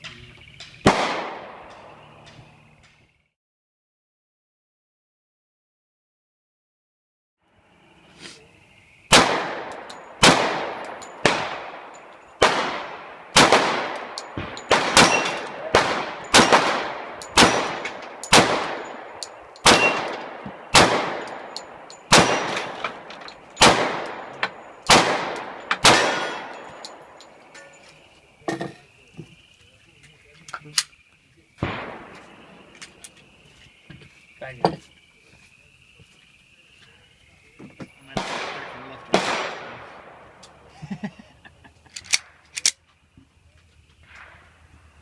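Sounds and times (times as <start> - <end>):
pistol shots: 0.8 - 2.0, 9.1 - 27.7, 31.6 - 32.7, 38.2 - 40.5.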